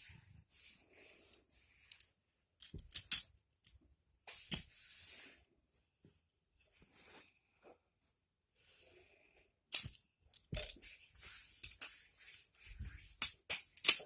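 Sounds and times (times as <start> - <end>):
magnetic blocks clicking together: 2.6 - 3.3.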